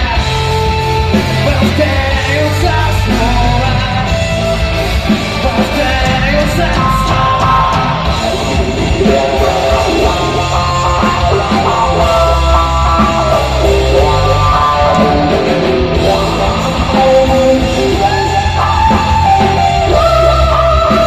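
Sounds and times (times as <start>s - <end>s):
rock band playing live: 0.0s - 21.0s
person singing: 5.3s - 21.0s.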